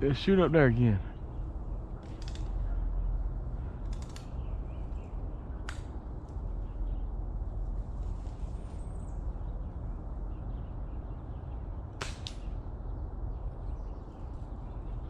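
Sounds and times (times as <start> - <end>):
faint snap: 12.0 - 12.4
pellet rifle shot crack: 12.0 - 12.5.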